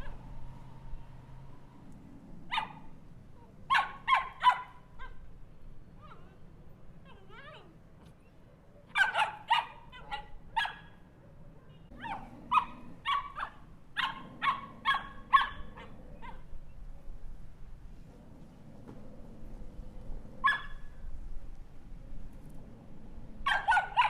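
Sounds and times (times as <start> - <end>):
small dog barking: 2.5 - 5.3, 8.9 - 11.0, 11.6 - 16.5, 20.4 - 21.0, 23.4 - 24.0.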